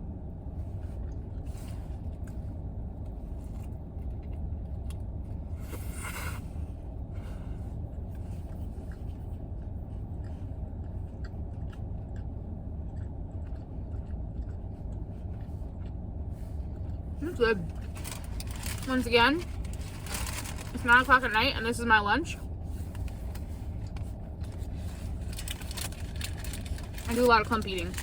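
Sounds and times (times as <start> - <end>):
car engine idling: 15.1 - 28.0.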